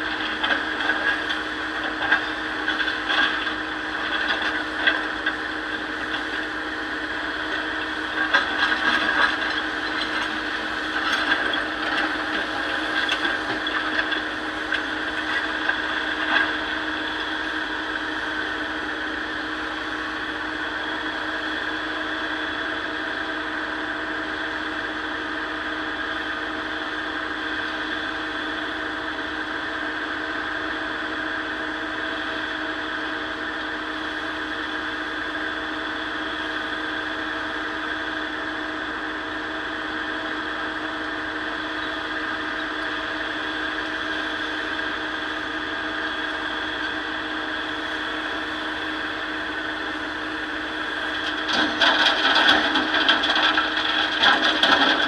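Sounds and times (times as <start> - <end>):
excavator diesel engine running: 0.0 - 55.0
rocks clattering: 51.3 - 55.0.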